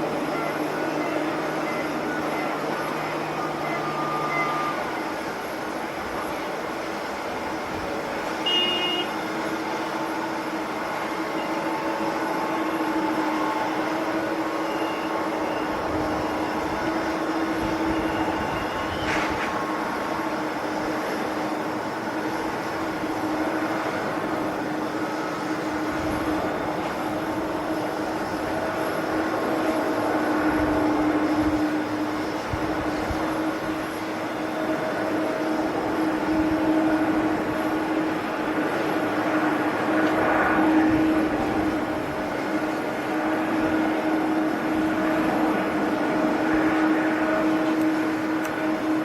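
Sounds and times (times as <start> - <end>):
jet engines roaring: 0.0 - 49.0.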